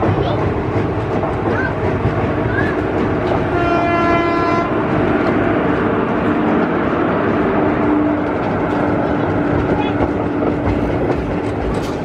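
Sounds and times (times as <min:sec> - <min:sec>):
train wheels rumbling on track: 0:00.0 - 0:12.0
train horn blast: 0:03.5 - 0:04.9.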